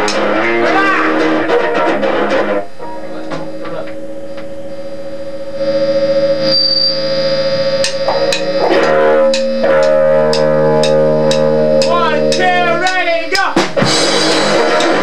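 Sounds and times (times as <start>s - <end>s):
guitar chords through effects: 0.0s - 15.0s.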